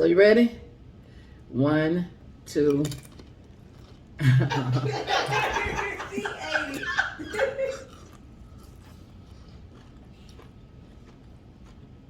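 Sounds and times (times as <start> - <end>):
chewing crunchy chip: 3.0 - 4.2, 7.9 - 12.0.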